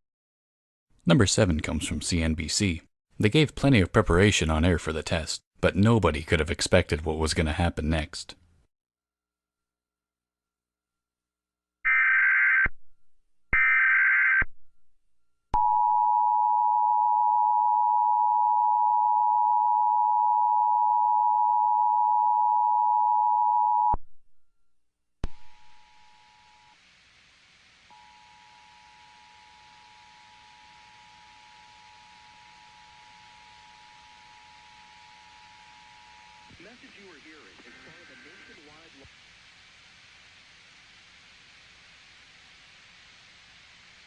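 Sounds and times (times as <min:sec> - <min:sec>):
faint hiss: 0:25.4 - 0:35.2, 0:36.0 - 0:44.0.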